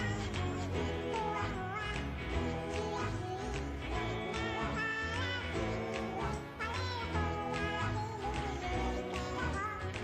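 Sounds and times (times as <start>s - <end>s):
upbeat pop song with singing: 0.0s - 10.0s.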